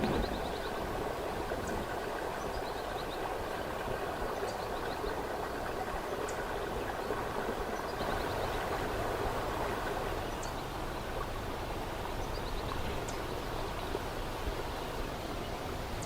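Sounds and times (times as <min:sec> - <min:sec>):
flowing stream water: 0:00.0 - 0:16.0.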